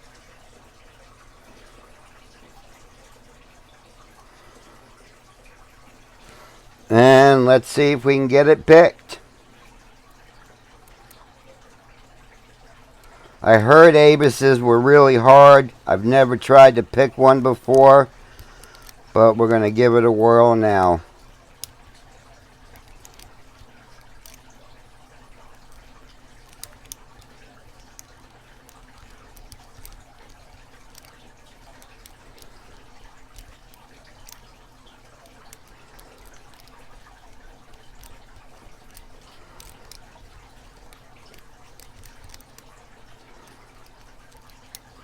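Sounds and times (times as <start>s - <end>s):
lock pick clicks and scratches: 22.7s - 24.5s, 25.5s - 34.5s, 35.2s - 42.7s.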